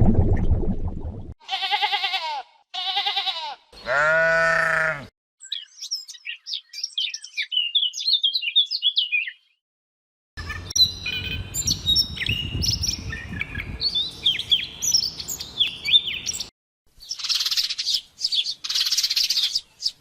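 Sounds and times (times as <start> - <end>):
farm animal bleating: 1.4 - 5.1
small bird chirping: 5.4 - 9.5, 10.4 - 20.0.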